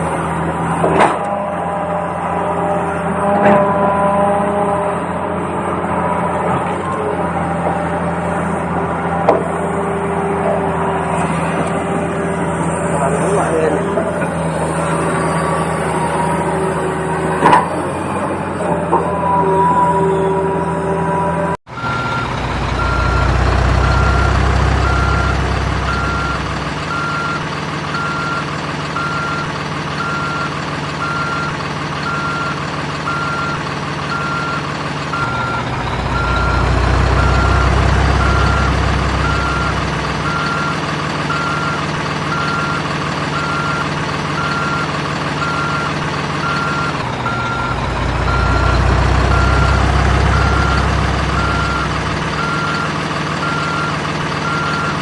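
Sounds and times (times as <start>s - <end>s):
low engine drone: 0.0s - 55.0s
reversing beeps: 12.9s - 55.0s.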